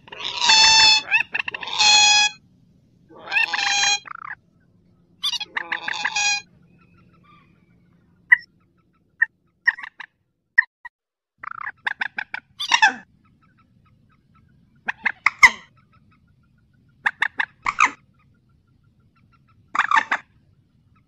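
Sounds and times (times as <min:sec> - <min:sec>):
rail bird sharp call notes: 0:00.4 - 0:02.4, 0:05.2 - 0:06.5.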